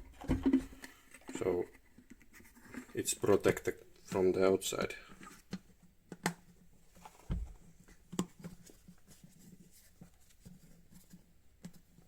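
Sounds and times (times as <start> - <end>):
dull thump: 7.2 - 7.6.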